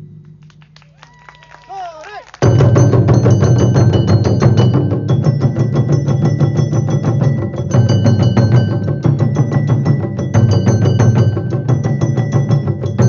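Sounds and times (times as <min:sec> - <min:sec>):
low drumming: 0:00.0 - 0:01.0.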